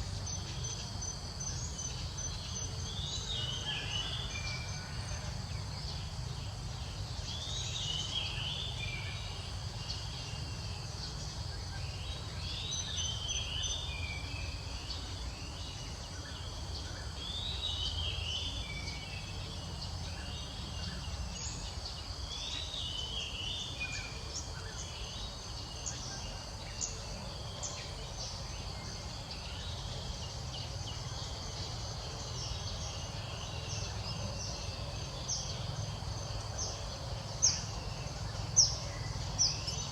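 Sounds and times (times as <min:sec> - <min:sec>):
insect hum: 0:00.0 - 0:39.9.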